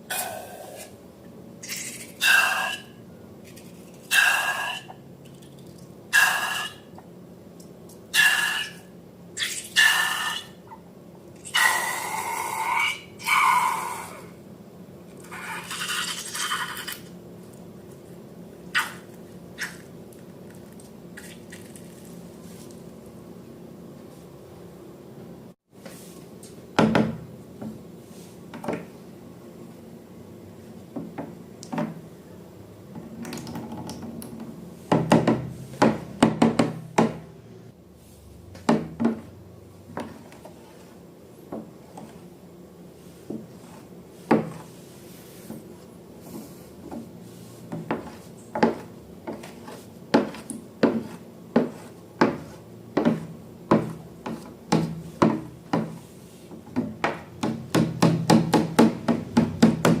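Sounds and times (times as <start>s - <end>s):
hands tapping and knocking: 50.2s - 56.0s, 56.7s - 60.0s.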